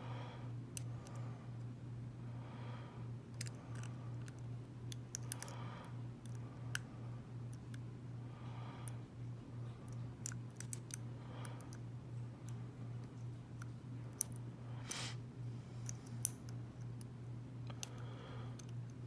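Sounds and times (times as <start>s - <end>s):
steady low hum: 0.0s - 19.0s
lock pick clicking in lock: 3.3s - 5.5s, 10.2s - 11.0s.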